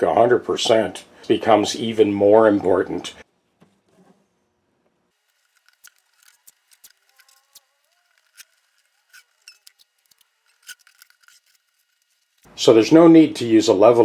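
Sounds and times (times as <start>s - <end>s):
light clicks and crinkling squeaks: 5.2s - 12.5s.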